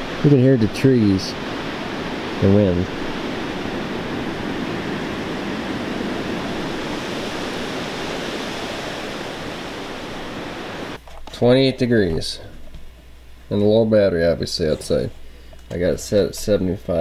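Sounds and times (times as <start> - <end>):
gusting wind through trees: 0.0 - 11.0.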